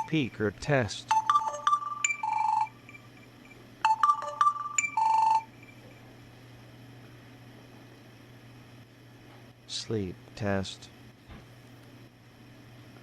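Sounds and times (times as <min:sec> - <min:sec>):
phone speaker electronic beeping tune: 0:01.1 - 0:05.9.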